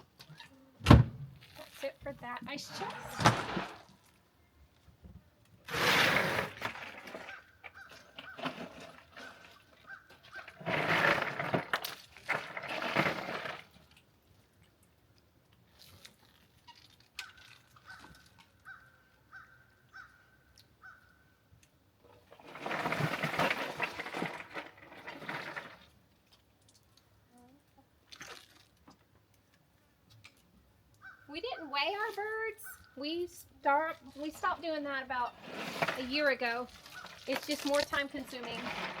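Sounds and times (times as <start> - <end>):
ice rattling and crunching: 2.6 - 4.2, 5.6 - 14.2, 22.1 - 26.8, 33.7 - 39.0.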